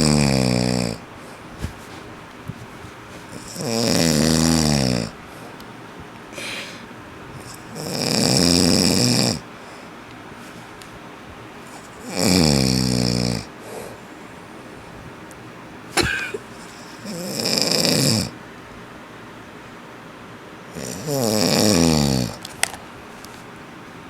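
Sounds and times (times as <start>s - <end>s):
man snoring loudly: 0.0s - 1.0s, 3.3s - 5.2s, 7.5s - 9.4s, 12.0s - 14.0s, 17.0s - 18.4s, 20.7s - 22.4s.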